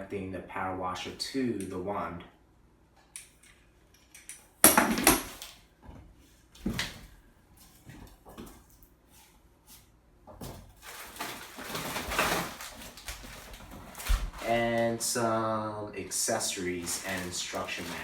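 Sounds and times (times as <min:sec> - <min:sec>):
packaging rustling and scraping: 0:10.6 - 0:14.9, 0:16.5 - 0:18.0.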